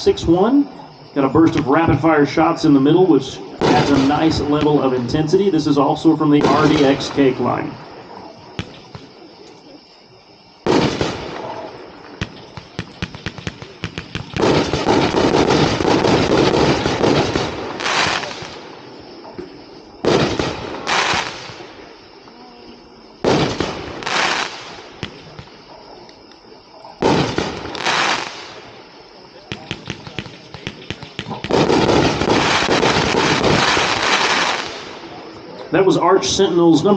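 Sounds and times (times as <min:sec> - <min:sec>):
firework cake shots: 0:03.6 - 0:04.8, 0:29.5 - 0:35.0.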